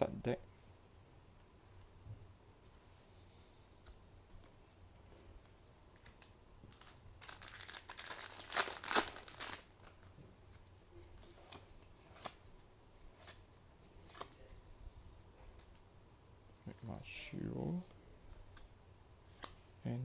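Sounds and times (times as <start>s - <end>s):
foil pack tearing and crinkling: 6.7s - 10.0s.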